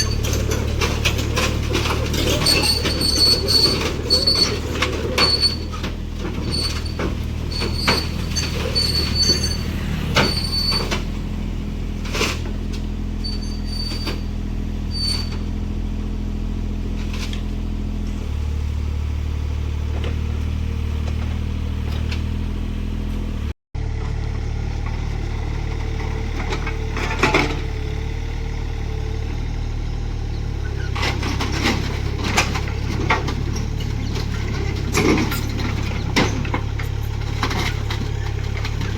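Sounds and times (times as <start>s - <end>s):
high squeals: 0.0s - 1.0s, 1.8s - 5.8s, 6.4s - 11.1s, 13.2s - 15.4s
machine clanks and knocks: 0.0s - 11.1s
excavator diesel engine running: 0.0s - 38.9s.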